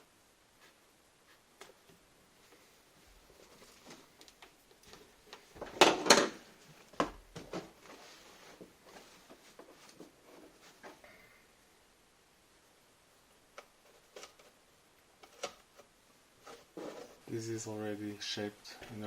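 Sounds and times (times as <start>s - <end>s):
rustling of felt and carpet: 6.6s - 10.9s.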